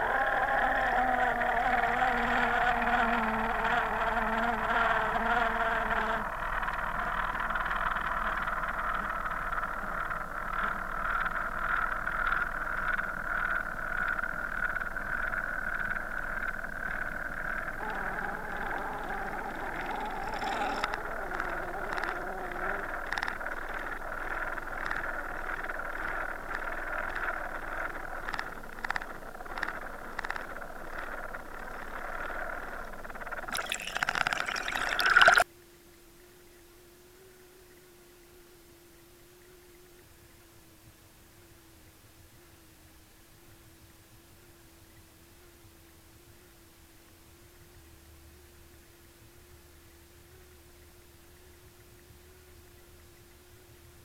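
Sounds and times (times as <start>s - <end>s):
small underwater clicks: 0.0s - 35.4s
faint hum: 0.0s - 54.0s
underwater watery hiss: 18.5s - 21.2s.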